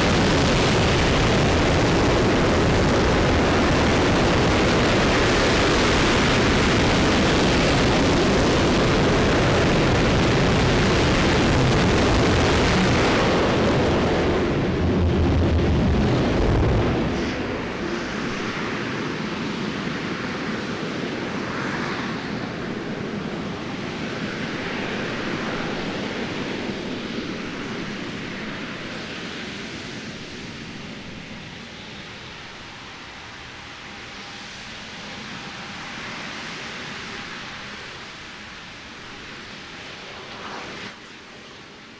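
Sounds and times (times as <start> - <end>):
rocket engine roaring: 0.0 - 41.9
echoing rumble: 13.2 - 18.6.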